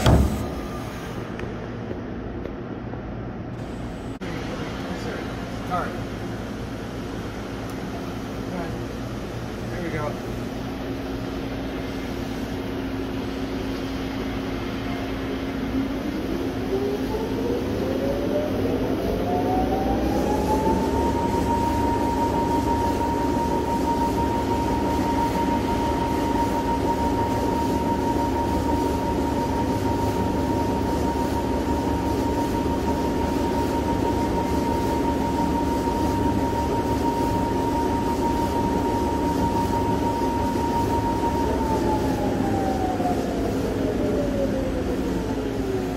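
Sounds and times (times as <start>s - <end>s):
spindle drive whine: 0.0s - 2.0s, 13.0s - 45.9s
low machine hum: 0.0s - 45.9s.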